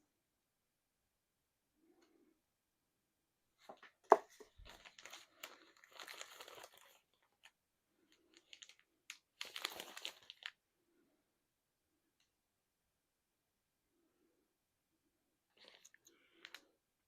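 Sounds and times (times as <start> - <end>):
packaging crinkling and rustling: 3.8 - 10.6, 15.6 - 16.6.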